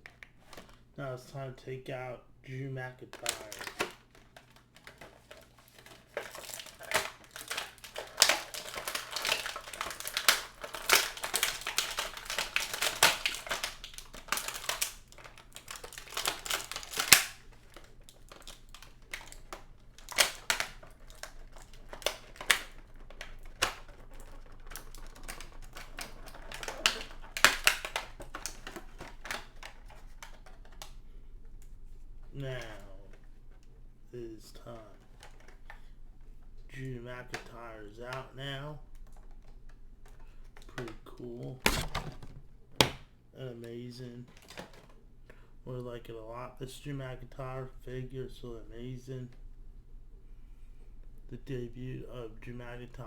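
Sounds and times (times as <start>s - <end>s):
plastic packaging crinkling: 0.0s - 1.0s, 3.0s - 33.8s, 34.6s - 43.0s
sharp plastic clicks: 3.1s - 31.7s, 37.3s - 43.1s.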